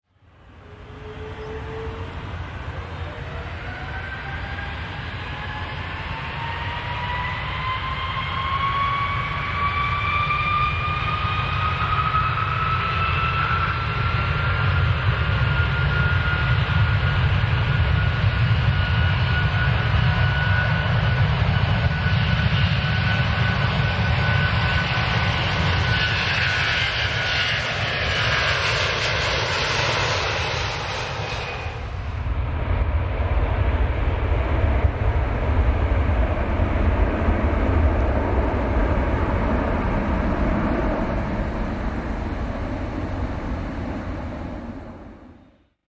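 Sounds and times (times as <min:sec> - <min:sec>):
airplane engine taking off: 0:00.1 - 0:45.9
low rumble: 0:29.7 - 0:45.4.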